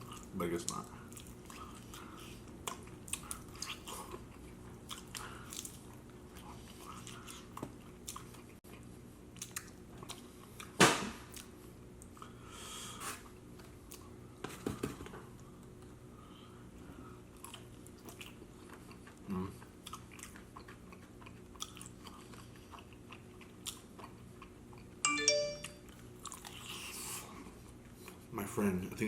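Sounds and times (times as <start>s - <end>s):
person chewing: 0.0s - 14.1s, 16.7s - 25.0s, 25.6s - 28.3s.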